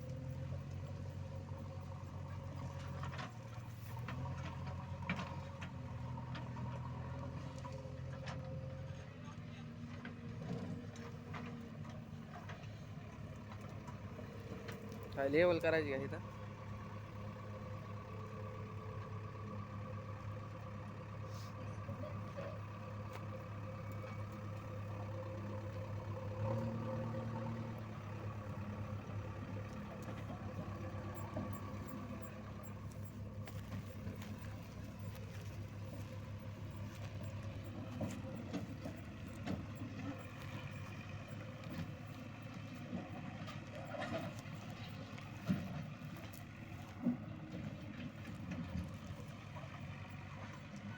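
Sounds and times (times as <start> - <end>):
diesel engine running and revving: 0.0 - 50.9.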